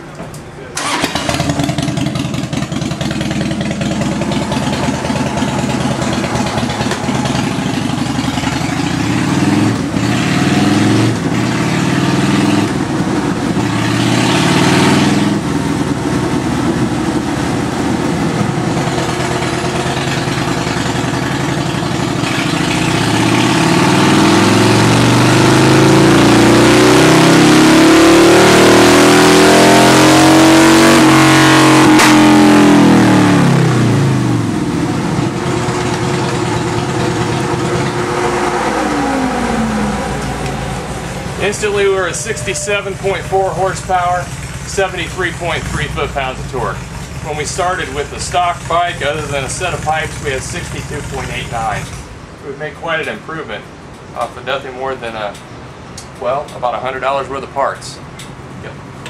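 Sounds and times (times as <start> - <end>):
motorcycle engine revving: 0.8 - 52.2.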